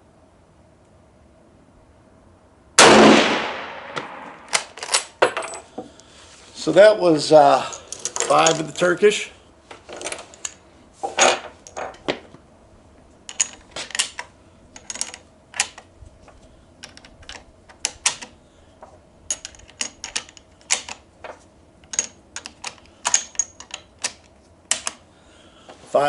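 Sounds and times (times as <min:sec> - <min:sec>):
metallic cartridge clicks and clinks: 0:13.3 - 0:15.8, 0:19.3 - 0:21.0, 0:21.9 - 0:25.0.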